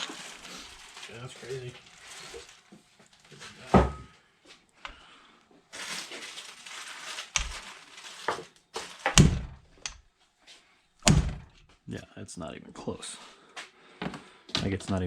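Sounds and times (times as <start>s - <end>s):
rustling: 0.0s - 3.6s, 5.7s - 10.0s.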